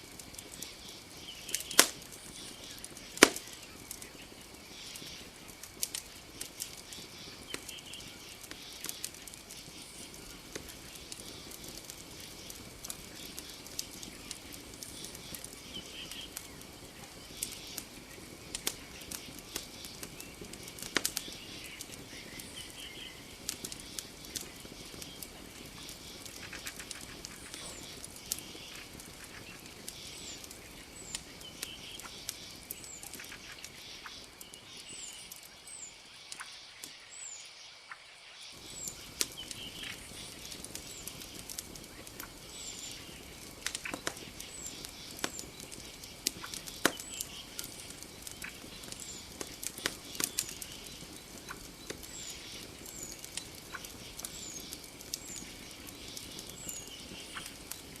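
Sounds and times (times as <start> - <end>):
campfire crackling and popping: 0.0 - 37.4, 38.5 - 58.0
night forest ambience: 0.0 - 58.0.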